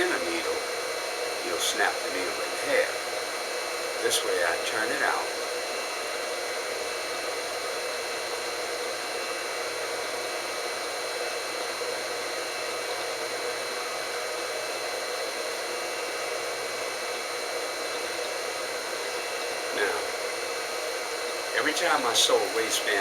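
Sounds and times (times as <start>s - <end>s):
steady background hiss: 0.0s - 5.3s, 19.7s - 23.0s
faint high steady tones: 0.0s - 11.0s, 15.3s - 23.0s.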